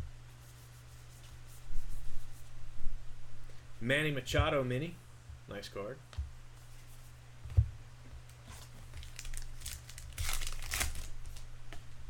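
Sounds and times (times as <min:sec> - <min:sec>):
wrapper tearing and crinkling: 0:08.6 - 0:11.5.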